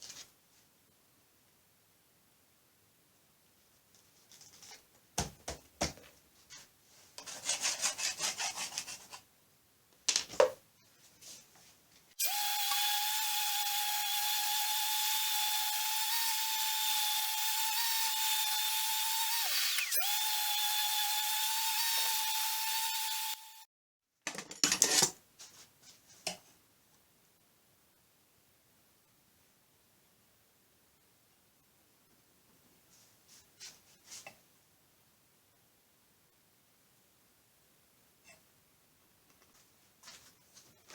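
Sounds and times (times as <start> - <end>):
orbital sander whining: 12.2 - 23.6.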